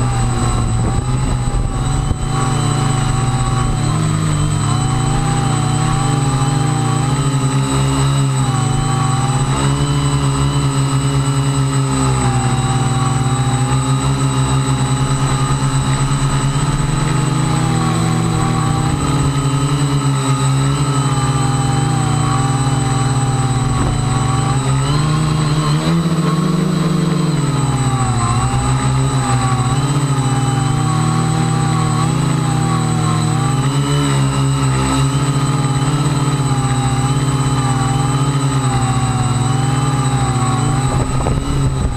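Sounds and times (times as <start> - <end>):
wind buffeting microphone: 0.0 - 6.8, 21.3 - 26.0, 40.4 - 41.9
drone propellers whining: 0.0 - 41.9.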